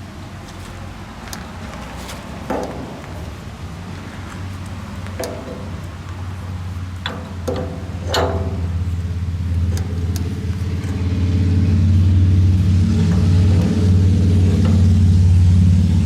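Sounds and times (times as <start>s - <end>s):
engine running: 0.0s - 16.0s
ringing metal clanks: 5.1s - 15.4s.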